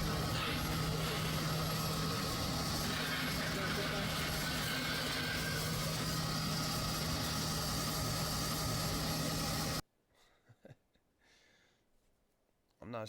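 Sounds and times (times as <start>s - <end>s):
engine humming: 0.0s - 9.8s.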